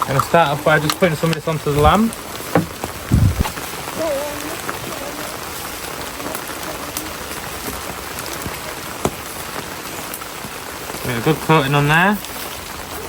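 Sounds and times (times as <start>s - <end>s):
drops ticking: 0.0s - 4.8s
rain falling: 0.0s - 13.0s
low thump: 2.5s - 3.6s.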